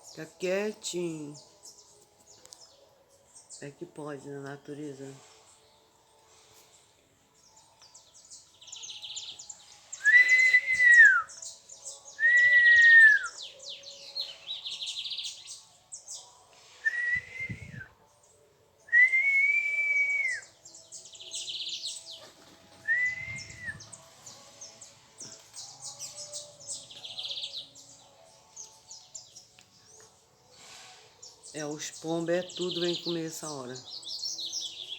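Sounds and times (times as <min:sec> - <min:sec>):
small birds chirping: 0:00.0 - 0:34.9
bird whistled call: 0:09.9 - 0:11.5, 0:12.1 - 0:13.6, 0:16.8 - 0:17.9, 0:18.9 - 0:20.6, 0:22.8 - 0:24.0.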